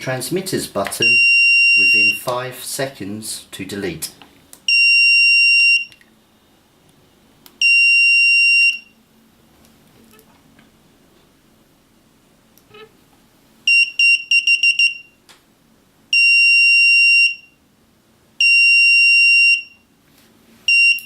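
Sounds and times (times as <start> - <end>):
buzzer beeping high tone: 1.0 - 2.2, 7.6 - 8.9, 13.7 - 15.2, 20.7 - 21.0.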